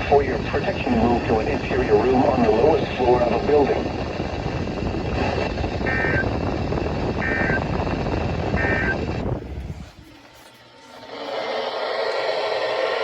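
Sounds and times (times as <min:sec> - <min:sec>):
radio static: 0:00.0 - 0:11.7
warbling data bursts: 0:05.1 - 0:11.6.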